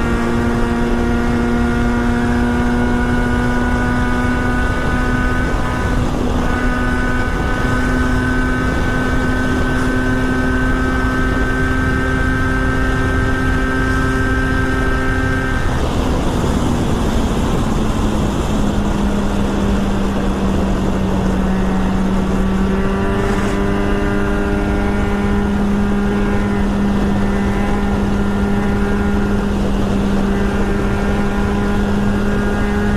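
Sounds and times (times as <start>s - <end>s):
motorcycle engine running: 0.0s - 32.9s
wind noise: 0.0s - 32.9s.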